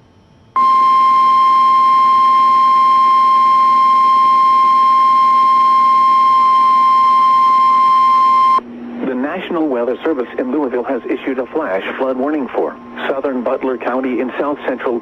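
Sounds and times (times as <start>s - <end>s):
high-pitched alarm tone: 0.6s - 8.6s.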